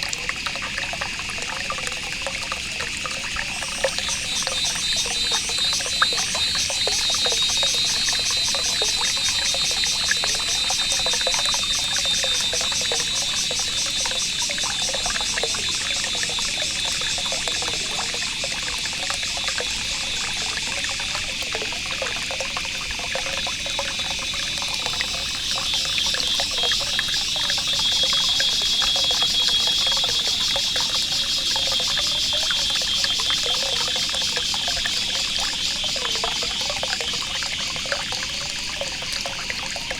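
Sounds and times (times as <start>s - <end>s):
trickling water: 0.0s - 39.9s.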